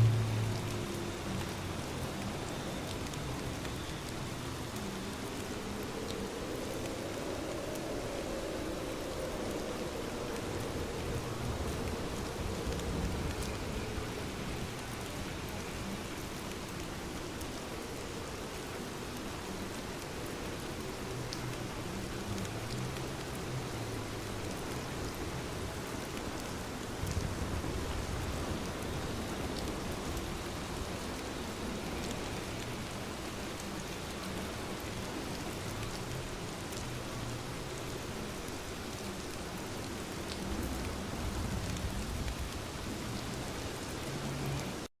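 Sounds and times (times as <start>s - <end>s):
steady rain falling: 0.0s - 44.9s.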